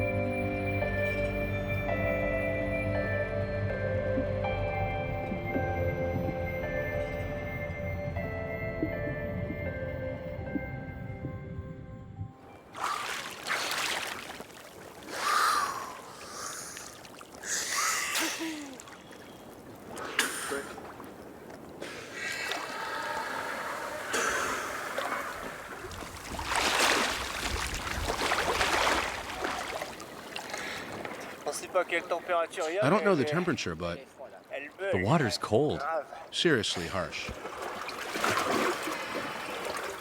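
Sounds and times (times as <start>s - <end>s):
water splashing: 12.6s - 32.6s, 36.5s - 40.0s
person gasping for breath: 15.1s - 18.8s.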